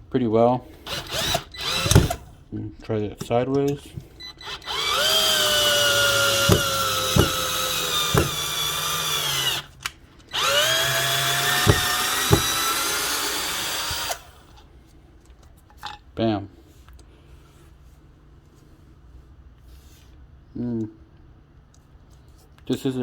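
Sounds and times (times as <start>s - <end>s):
cordless drill whining: 0.8s - 2.3s, 4.0s - 14.6s
sharp drill clicks: 0.8s - 2.3s, 4.2s - 14.6s.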